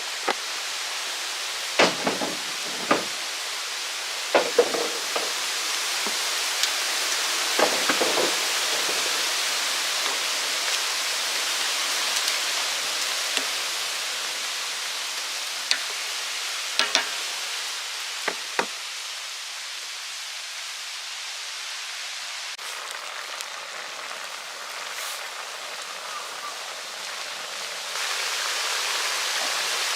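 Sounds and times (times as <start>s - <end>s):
sharp knocks: 1.8s - 3.2s, 4.3s - 5.4s, 7.6s - 8.4s
meat sizzling in a pan: 3.1s - 19.8s, 22.6s - 29.9s.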